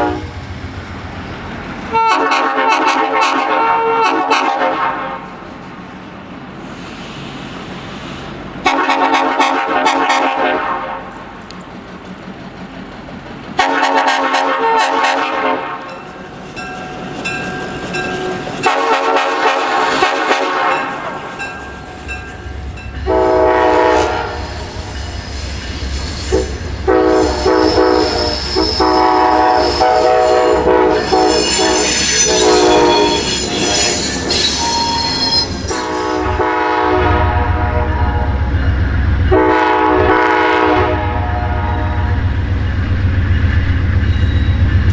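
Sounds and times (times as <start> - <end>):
train air horn chord blasts: 0.0 - 0.4, 1.9 - 5.3, 8.6 - 11.1, 13.6 - 15.9, 18.6 - 21.1, 23.0 - 24.7, 26.3 - 38.5, 39.3 - 42.2.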